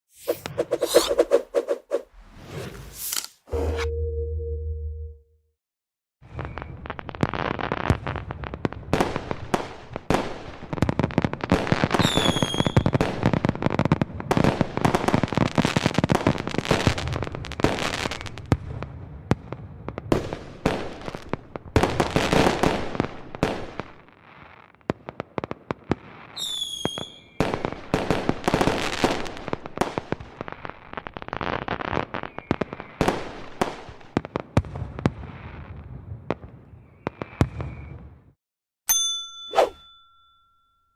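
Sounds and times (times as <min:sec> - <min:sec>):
fireworks bangs and crackling: 0:06.2 - 0:38.3
firework falling whistle: 0:12.0 - 0:13.0, 0:26.4 - 0:27.4.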